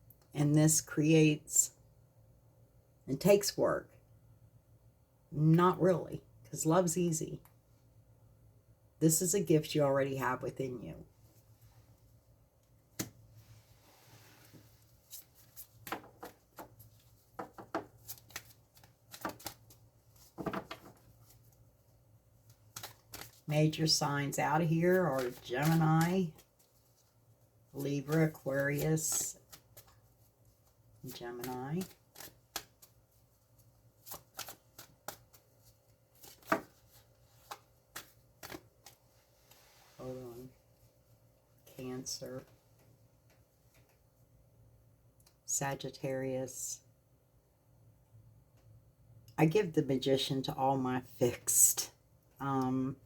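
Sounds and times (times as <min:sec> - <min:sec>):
cards being shuffled: 0:14.5 - 0:21.6, 0:22.4 - 0:23.5, 0:24.7 - 0:26.9, 0:27.8 - 0:30.0, 0:30.6 - 0:39.6.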